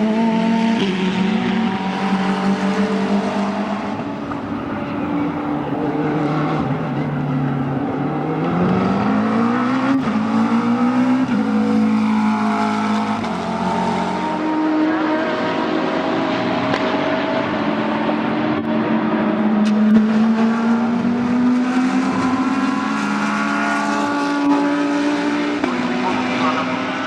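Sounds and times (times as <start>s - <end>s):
other race car engines: 0.0s - 27.0s
race car engine accelerating: 0.0s - 27.0s.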